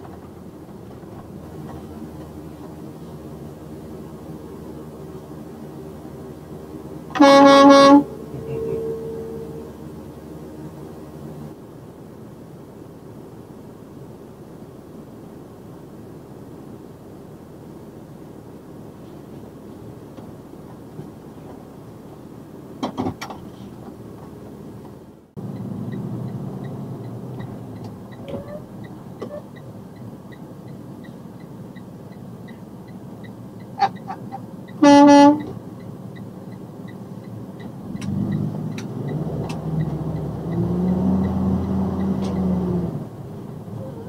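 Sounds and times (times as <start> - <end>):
truck engine and road noise: 0.0 - 44.0
truck horn blast: 7.1 - 10.0, 33.8 - 35.6.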